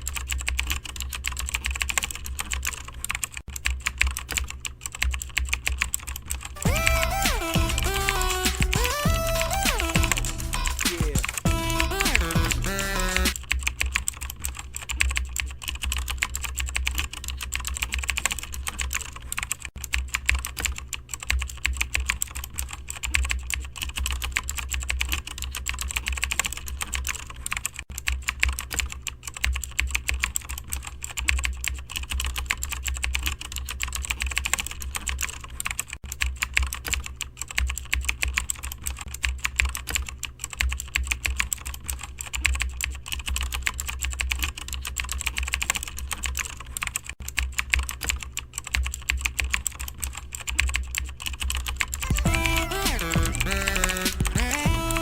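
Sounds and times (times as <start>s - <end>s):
fast typing on keyboard: 0.0s - 55.0s
low hum: 6.6s - 13.3s.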